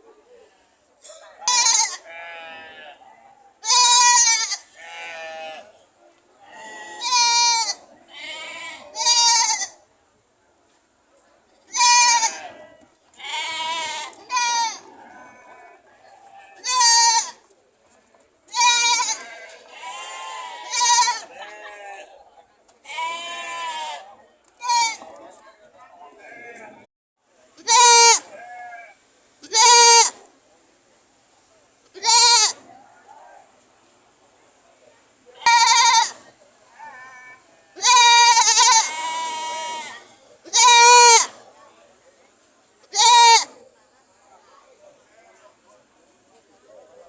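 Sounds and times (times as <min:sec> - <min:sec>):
goat bleating: 0:01.4 - 0:03.0, 0:03.6 - 0:05.7, 0:06.5 - 0:09.8, 0:11.7 - 0:17.4, 0:18.5 - 0:22.1, 0:22.8 - 0:25.1, 0:27.6 - 0:30.2, 0:32.0 - 0:32.6, 0:35.4 - 0:36.2, 0:36.8 - 0:41.4, 0:42.9 - 0:43.6.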